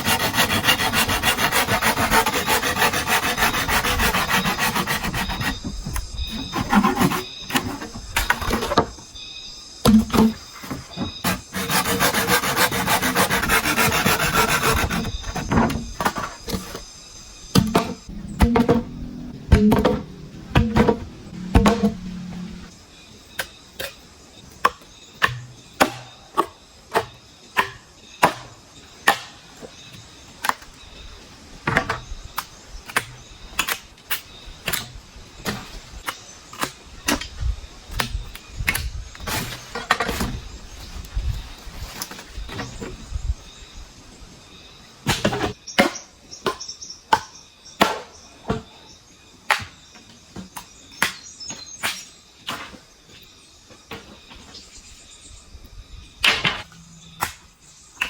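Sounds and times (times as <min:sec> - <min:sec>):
blade chopping bamboo: 0:11.2 - 0:15.6.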